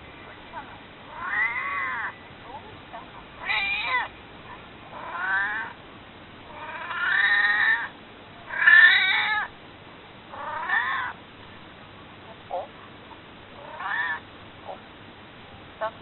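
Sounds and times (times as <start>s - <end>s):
cat meowing: 1.1s - 2.1s, 3.4s - 4.1s, 5.0s - 5.7s, 6.5s - 7.9s, 8.5s - 9.5s, 13.6s - 14.2s.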